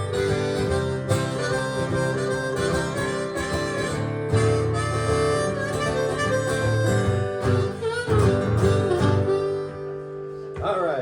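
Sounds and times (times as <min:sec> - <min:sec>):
blues harmonica wailing: 0:00.0 - 0:10.6
strummed acoustic guitar: 0:00.0 - 0:10.6.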